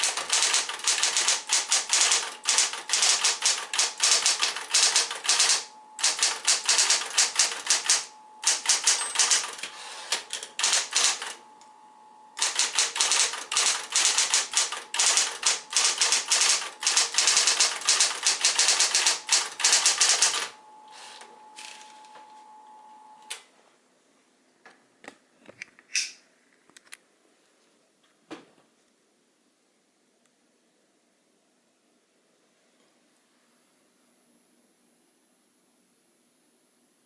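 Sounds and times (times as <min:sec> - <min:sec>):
electric typewriter typing: 0:00.0 - 0:11.4, 0:12.4 - 0:21.8
steady hum: 0:00.0 - 0:24.1.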